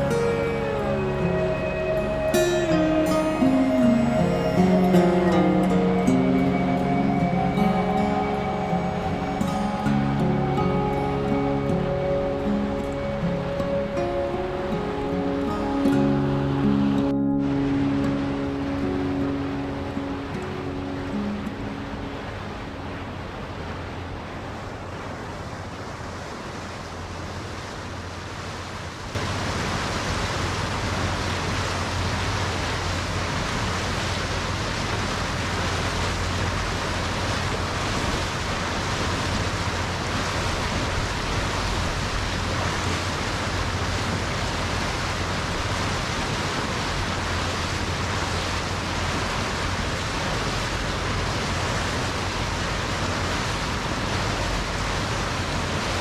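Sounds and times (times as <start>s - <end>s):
low steady hum: 0.0s - 28.3s
water rushing past boat: 0.0s - 56.0s
wind: 0.0s - 56.0s.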